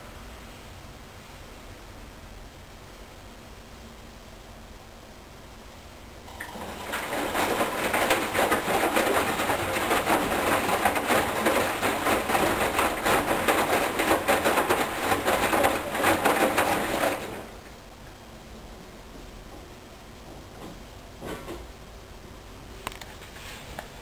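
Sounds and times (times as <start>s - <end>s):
washing machine drum sloshing: 6.3s - 17.9s.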